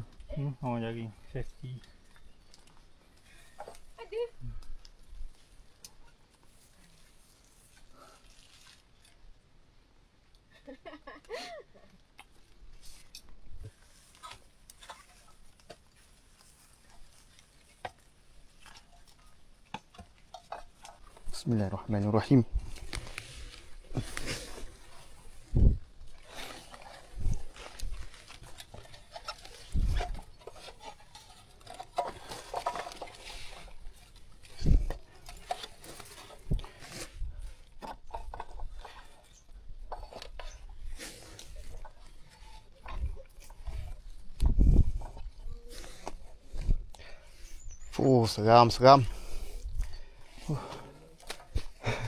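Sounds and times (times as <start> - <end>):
rustling of gear and vegetation: 0.0 - 9.5, 12.0 - 52.0
footsteps on mountain trail: 22.0 - 37.8.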